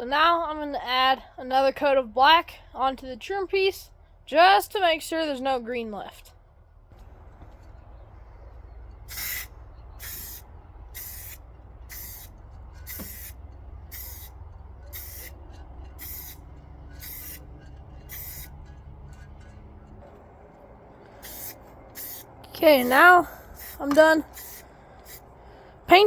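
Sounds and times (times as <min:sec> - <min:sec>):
spray paint can hissing: 0:09.1 - 0:10.4, 0:11.0 - 0:15.4, 0:16.0 - 0:16.4, 0:17.0 - 0:17.4, 0:18.1 - 0:18.5, 0:21.2 - 0:25.2.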